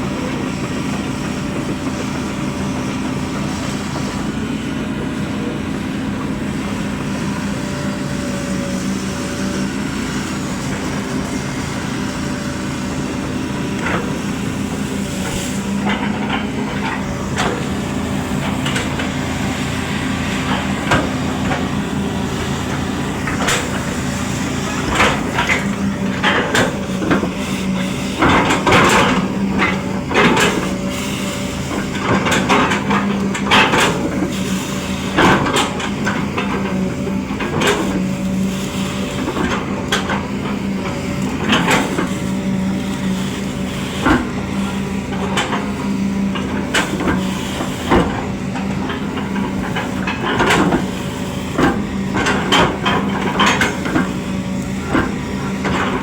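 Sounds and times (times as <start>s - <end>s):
excavator diesel engine running: 0.0s - 56.0s
knocks and clanks: 15.1s - 30.8s, 39.1s - 56.0s.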